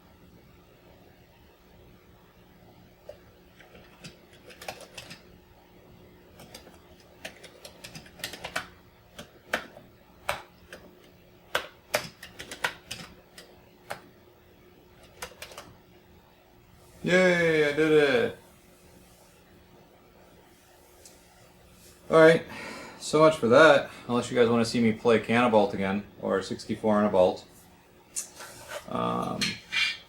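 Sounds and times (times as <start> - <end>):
faint steady hum: 0.0 - 30.0
keyboard keys clacking: 15.0 - 15.7.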